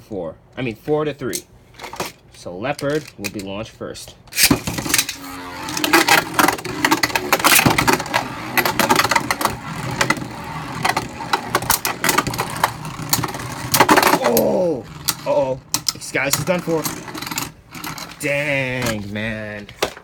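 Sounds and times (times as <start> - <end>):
spinning tops whirring: 4.4 - 18.8
tops clicking and clacking: 4.4 - 19.0.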